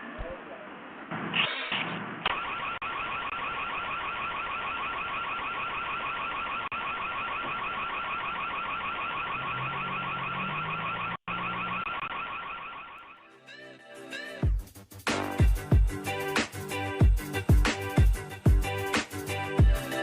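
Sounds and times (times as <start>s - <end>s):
warbling security alarm siren: 2.3s - 13.3s.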